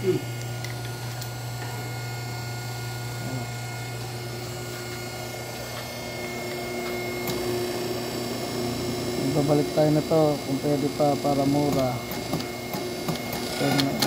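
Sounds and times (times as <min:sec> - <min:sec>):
electric pump motor humming: 0:00.0 - 0:14.0.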